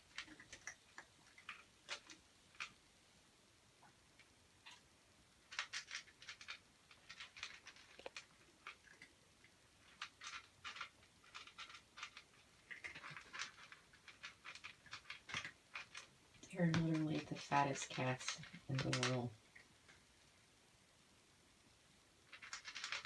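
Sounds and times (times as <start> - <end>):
cats crunching dry kibble: 0.1 - 2.8, 5.4 - 20.0, 22.3 - 23.0.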